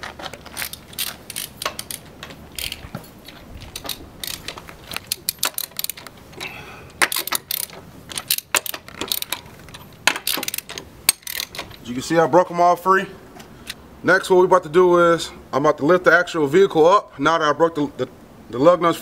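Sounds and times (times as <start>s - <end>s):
socket ratchet clicking: 0.3s - 11.8s.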